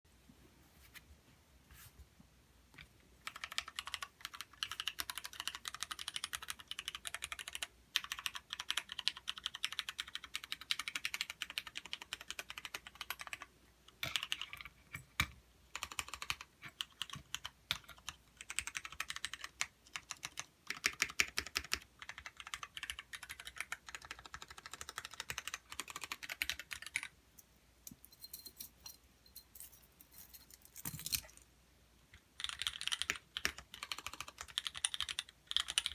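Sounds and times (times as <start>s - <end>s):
mechanical keyboard typing: 3.2s - 27.2s, 32.2s - 35.9s.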